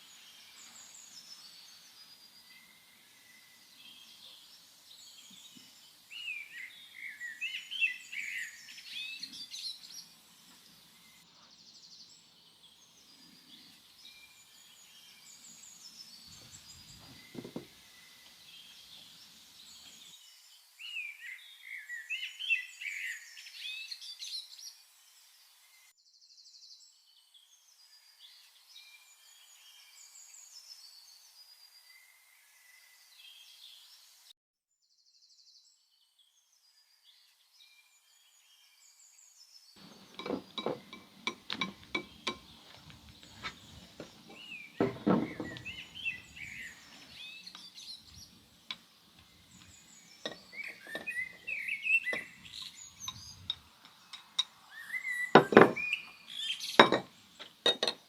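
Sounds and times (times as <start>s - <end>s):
birds chirping: 0.0s - 23.7s, 39.8s - 58.0s
sharp knocks and clinks: 17.0s - 17.7s, 39.8s - 46.5s, 49.6s - 54.6s, 55.4s - 56.0s, 56.8s - 58.0s.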